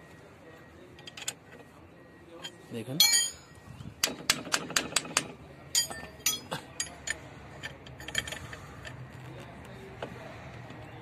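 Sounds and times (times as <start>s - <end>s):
metal tools clinking on brake parts: 2.4s - 9.0s.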